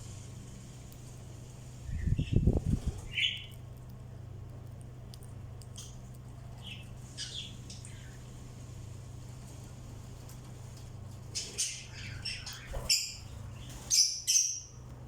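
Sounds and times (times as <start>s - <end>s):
steady low hum: 0.0s - 15.0s
birds chirping and squawking: 1.9s - 3.6s, 6.5s - 8.4s, 10.3s - 14.8s.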